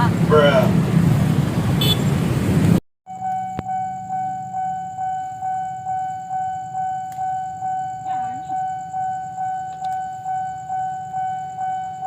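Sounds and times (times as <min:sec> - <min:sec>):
freight train rumbling past: 0:00.0 - 0:02.8
level crossing alarm pulsing: 0:03.1 - 0:12.0.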